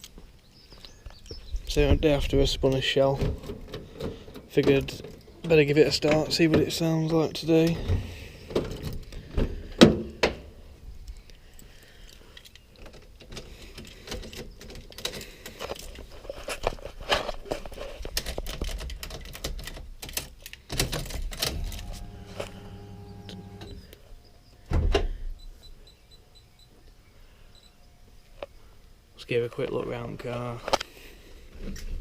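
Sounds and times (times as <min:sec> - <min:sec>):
mechanical hum: 0:21.3 - 0:24.6.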